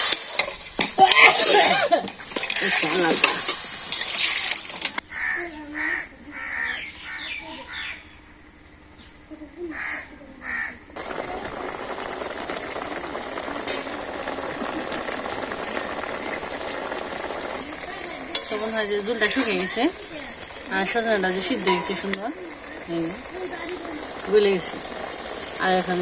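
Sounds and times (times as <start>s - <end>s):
pan of water simmering hiss: 0.0s - 5.0s, 9.7s - 26.0s
crow cawing: 5.0s - 8.2s, 9.7s - 11.2s.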